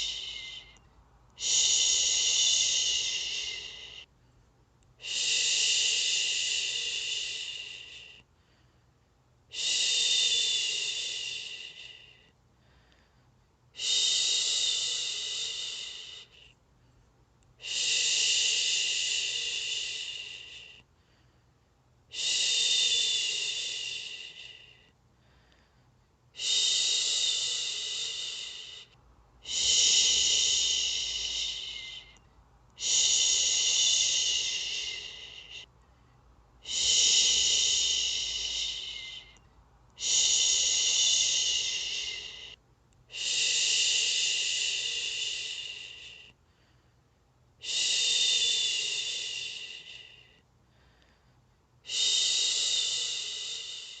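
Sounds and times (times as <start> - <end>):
person shushing: 0.0 - 0.8, 1.4 - 4.0, 26.4 - 32.2, 32.8 - 35.7, 36.6 - 39.4, 40.0 - 46.2.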